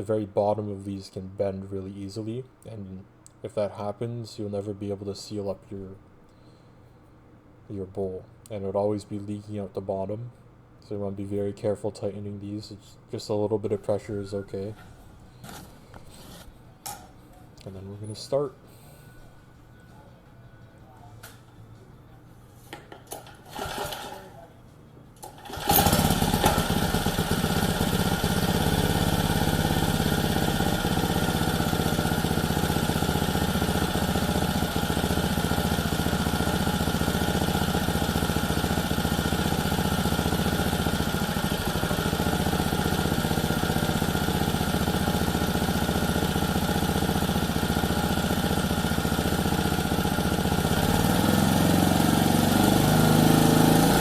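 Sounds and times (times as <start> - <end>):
small engine starting and running: 23.5 - 24.3, 25.2 - 54.0.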